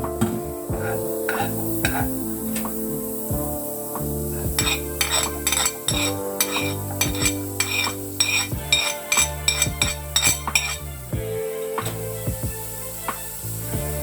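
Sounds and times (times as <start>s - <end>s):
background music: 0.0s - 14.0s
utensil clinking against pan: 4.6s - 10.8s.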